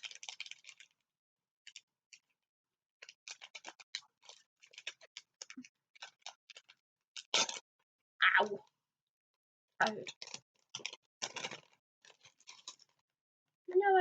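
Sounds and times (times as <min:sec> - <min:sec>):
loud packaging crackle: 0:00.0 - 0:00.9, 0:03.0 - 0:07.6, 0:10.0 - 0:12.9
packaging crinkling: 0:00.0 - 0:00.9, 0:03.0 - 0:07.6, 0:10.0 - 0:13.0.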